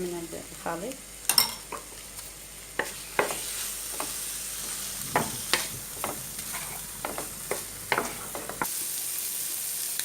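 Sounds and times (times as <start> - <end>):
shrimp sizzling in a frying pan: 0.0 - 10.0
utensil scraping and tapping pan: 2.8 - 4.2, 5.2 - 8.7.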